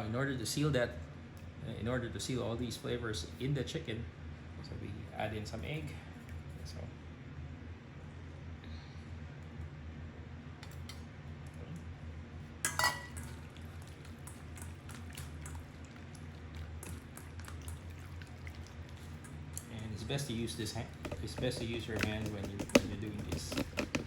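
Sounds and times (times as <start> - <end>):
clink against a bowl: 12.7 - 13.3
wet squelches of mixing by hand: 13.1 - 24.0.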